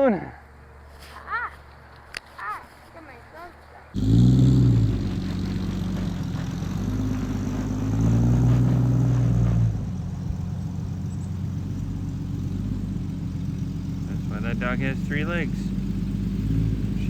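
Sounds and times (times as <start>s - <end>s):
vehicle engine revving: 3.9s - 17.0s.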